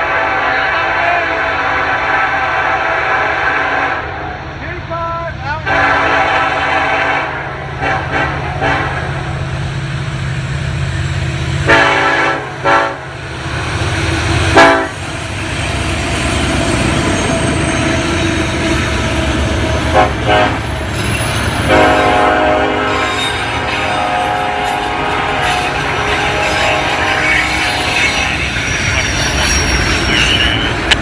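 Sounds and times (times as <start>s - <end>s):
train horn blasts: 0.0s - 4.2s, 5.6s - 9.3s, 11.6s - 13.2s, 14.5s - 15.0s, 19.9s - 20.7s, 21.6s - 28.6s
locomotives rumbling past: 4.2s - 31.0s.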